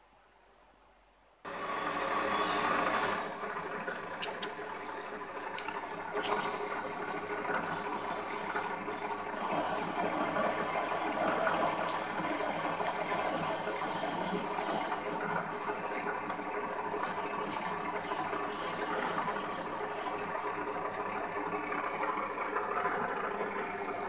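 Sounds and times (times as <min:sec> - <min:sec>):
milling machine spindle whine: 0:01.5 - 0:24.0
hiss of cutting: 0:08.2 - 0:16.0, 0:16.9 - 0:20.5.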